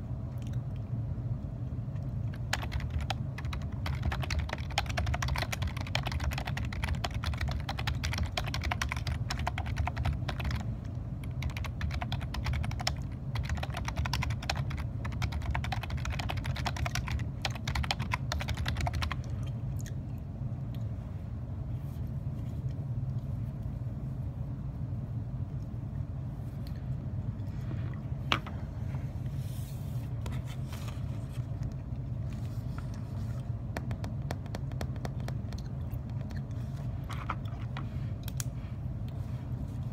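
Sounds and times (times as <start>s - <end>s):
steady low hum: 0.0s - 39.9s
keyboard typing: 2.3s - 19.2s.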